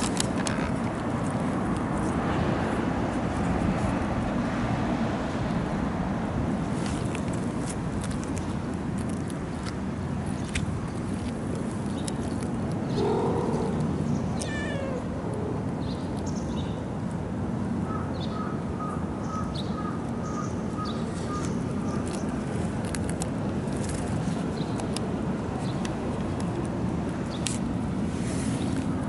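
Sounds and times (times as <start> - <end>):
cats meowing: 13.0 - 15.6.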